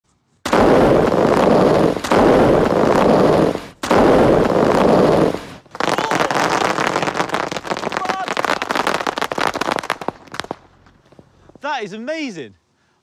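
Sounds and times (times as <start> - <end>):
fireworks exploding: 0.4 - 11.6
small crackling pops: 5.6 - 11.6.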